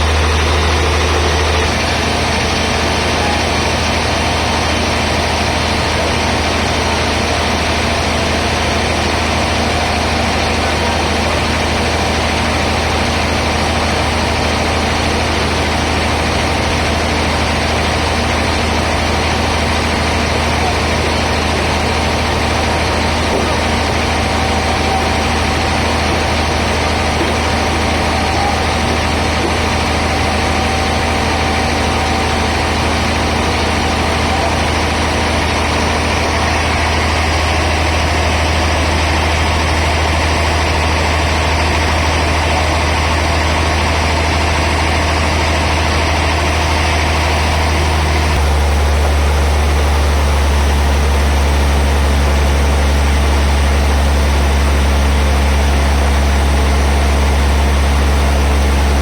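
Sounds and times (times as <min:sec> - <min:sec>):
heavy sawmill machinery humming: 0:00.0 - 0:59.0.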